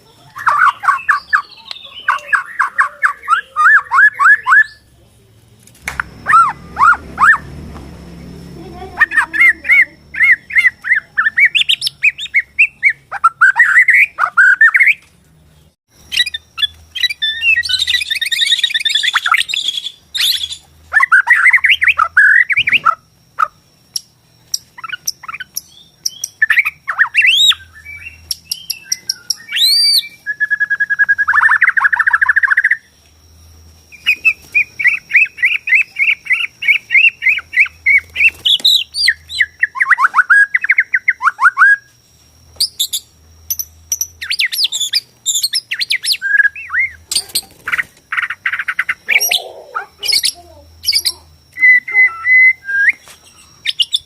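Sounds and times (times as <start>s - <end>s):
thin high tone: 0.0s - 13.1s
bird singing varied song: 0.0s - 54.0s.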